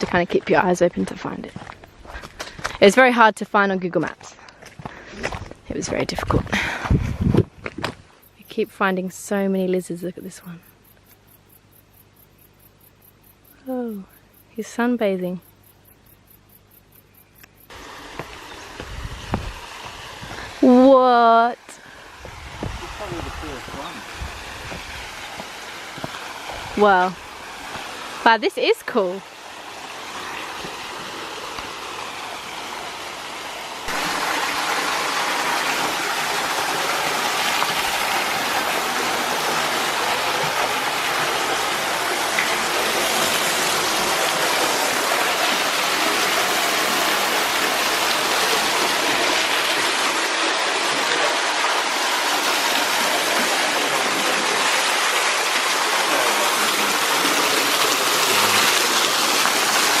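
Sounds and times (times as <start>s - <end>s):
waterfall rushing: 17.7s - 21.1s, 21.7s - 60.0s.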